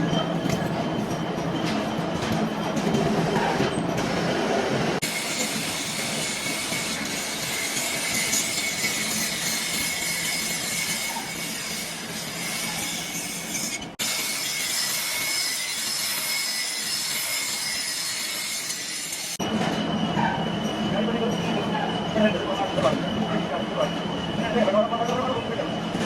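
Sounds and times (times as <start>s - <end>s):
harsh metal-working noise: 5.0s - 19.4s.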